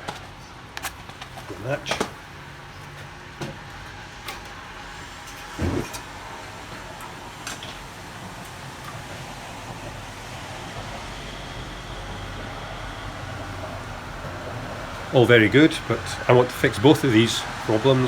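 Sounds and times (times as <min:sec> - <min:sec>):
rush of gas burner: 0:01.0 - 0:02.9, 0:04.8 - 0:18.0
gas igniting whoomph: 0:04.9 - 0:11.2.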